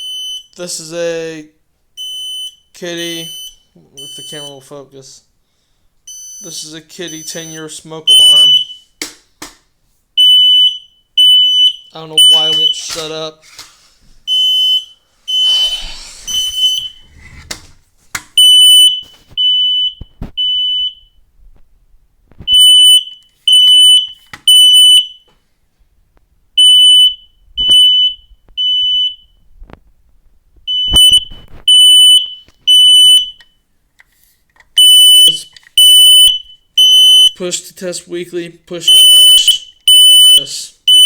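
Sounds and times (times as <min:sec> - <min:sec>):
smoke alarm beeping: 0:00.0 - 0:00.6, 0:02.0 - 0:04.7, 0:06.1 - 0:09.0, 0:10.2 - 0:13.2, 0:14.3 - 0:17.2, 0:18.4 - 0:21.2, 0:22.5 - 0:25.3, 0:26.6 - 0:29.4, 0:30.7 - 0:33.6, 0:34.7 - 0:37.5, 0:38.8 - 0:41.0
rustling: 0:15.2 - 0:20.4.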